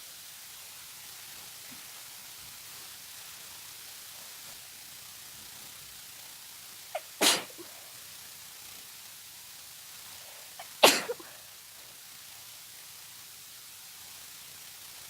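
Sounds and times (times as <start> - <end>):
person sneezing: 7.0 - 7.9, 10.6 - 11.4.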